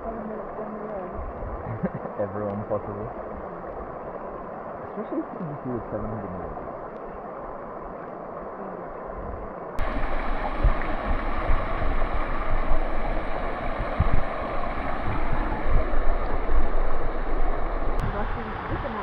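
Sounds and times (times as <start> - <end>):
wind buffeting microphone: 0.0 - 2.0, 7.4 - 19.0
water rushing over rocks: 9.4 - 19.0.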